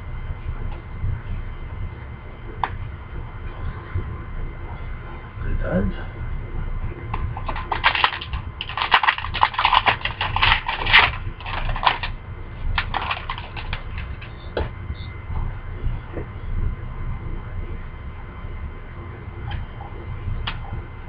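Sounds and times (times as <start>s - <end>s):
cards clicking and rustling: 7.4s - 12.2s, 12.8s - 14.3s.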